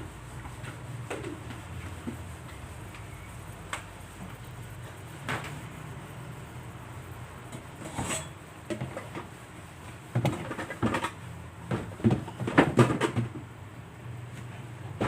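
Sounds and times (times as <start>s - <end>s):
low steady hum: 0.0s - 8.8s.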